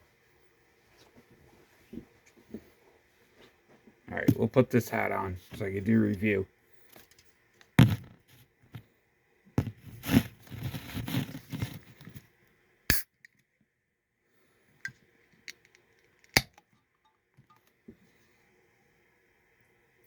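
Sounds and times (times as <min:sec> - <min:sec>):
rustling and crinkling: 0:09.6 - 0:12.3.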